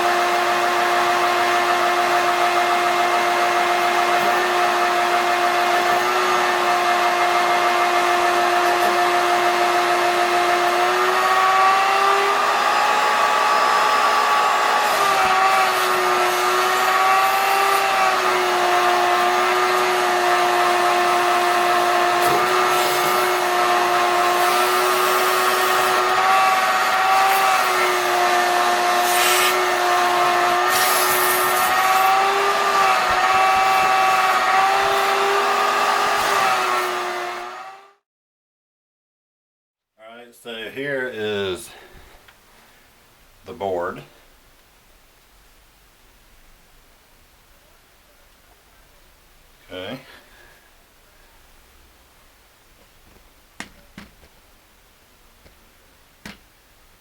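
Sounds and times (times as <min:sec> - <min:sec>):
electric motor whine: 0:00.0 - 0:38.0.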